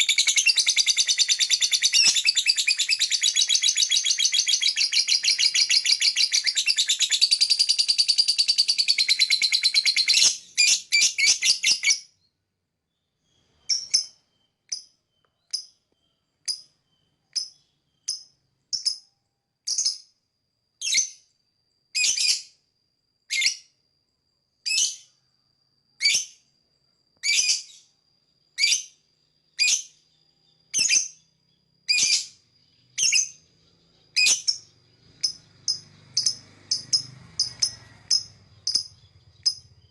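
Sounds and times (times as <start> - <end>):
lovebird chattering trill: 0.0 - 12.1, 13.6 - 15.8, 31.9 - 33.4, 34.0 - 39.9
bird high chirps: 0.0 - 20.2, 20.8 - 21.3, 22.0 - 22.6, 23.3 - 23.7, 24.6 - 25.2, 26.0 - 26.5, 27.2 - 39.9.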